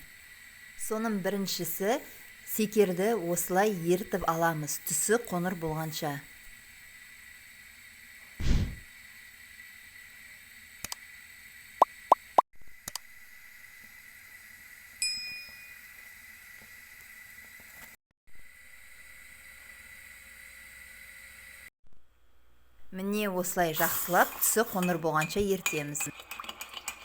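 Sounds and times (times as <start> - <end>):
thump: 8.4 - 8.8
ringing ding: 15.0 - 15.8
metal spoon clinking against pan: 24.7 - 27.0.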